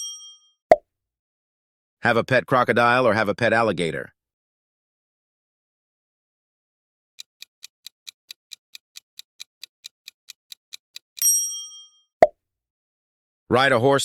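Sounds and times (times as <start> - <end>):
bell-like ding: 0.0 - 0.5, 11.2 - 12.1
clock ticking: 7.2 - 11.4.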